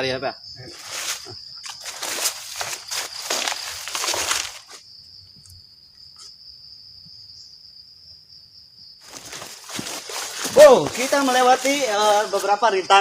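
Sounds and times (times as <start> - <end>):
forest insects droning: 0.0 - 13.0
loud rough rustling: 0.7 - 4.8, 9.0 - 12.6.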